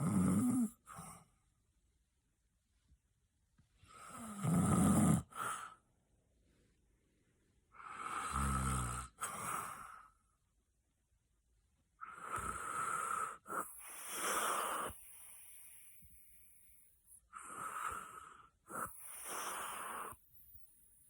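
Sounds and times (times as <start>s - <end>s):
person snoring loudly: 0.0s - 0.8s, 4.1s - 5.6s, 7.8s - 9.7s, 12.0s - 16.0s.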